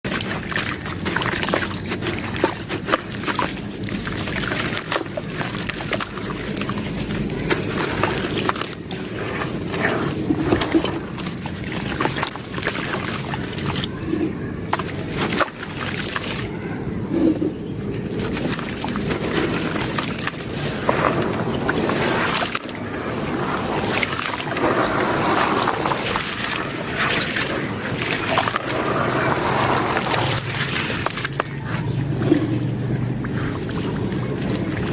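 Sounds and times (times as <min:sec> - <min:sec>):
sand-cement chunks crunching: 0:00.1 - 0:13.9, 0:18.2 - 0:31.6.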